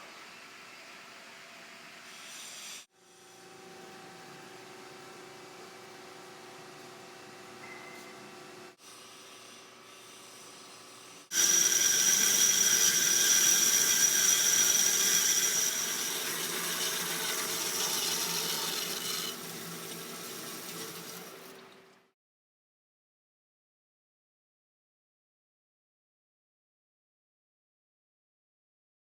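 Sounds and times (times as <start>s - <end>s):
band saw blade cutting: 11.3s - 21.6s.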